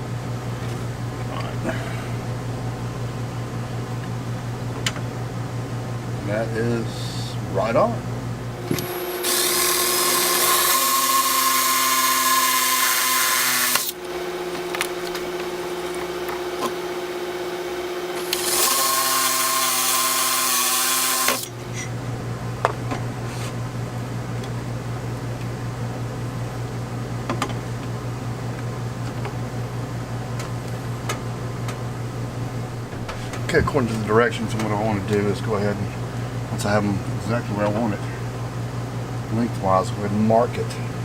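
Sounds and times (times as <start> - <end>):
power drill running: 8.6 - 21.8.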